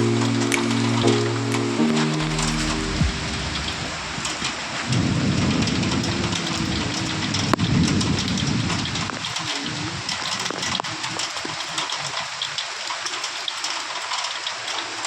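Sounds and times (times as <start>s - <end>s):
heavy rain falling: 0.0s - 15.0s
low rumble of thunder: 2.2s - 9.1s.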